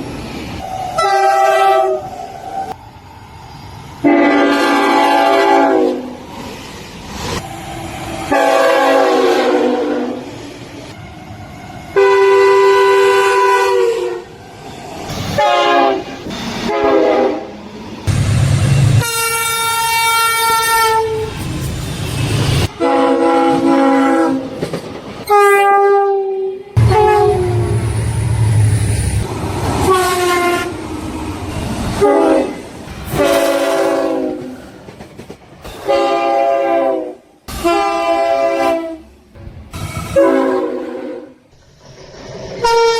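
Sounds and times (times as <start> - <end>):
low rumble of train: 0.0 - 42.9
train horns: 0.8 - 2.3, 4.0 - 6.2, 8.2 - 10.3, 11.2 - 14.4, 15.4 - 17.6, 18.8 - 21.4, 22.6 - 24.4, 25.2 - 27.9, 29.8 - 30.8, 31.9 - 34.6, 35.8 - 39.2, 40.0 - 41.5, 42.6 - 42.9.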